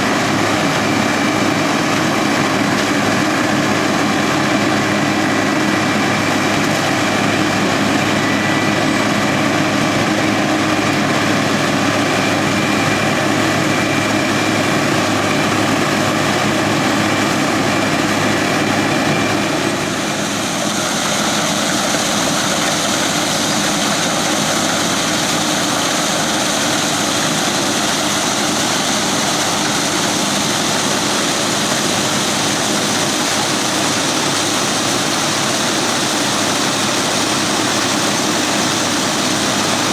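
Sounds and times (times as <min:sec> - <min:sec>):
combine harvester running: 0:00.0 - 0:39.9.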